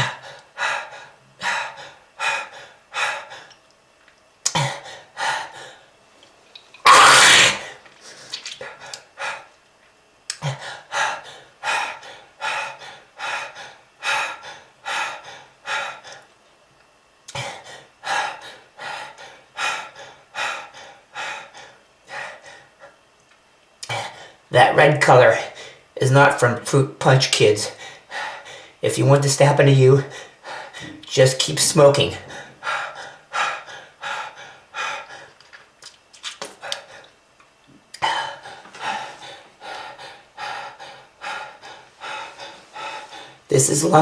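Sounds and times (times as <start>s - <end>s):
person coughing: 6.9s - 7.7s.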